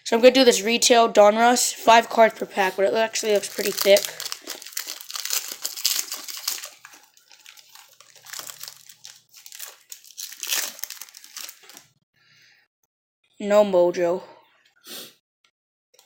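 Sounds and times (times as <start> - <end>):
plastic wrapper crinkling: 1.8 - 12.0.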